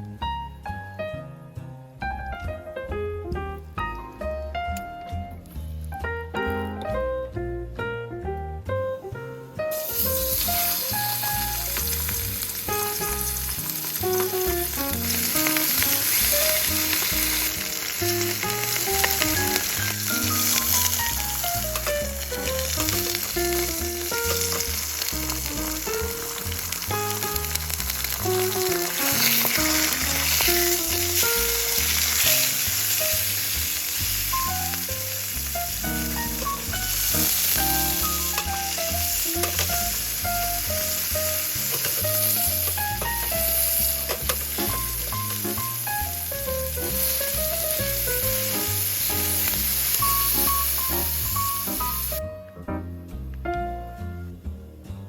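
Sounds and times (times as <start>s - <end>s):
light background music: 0.0s - 55.0s
food sizzling in a frying pan: 9.7s - 52.2s.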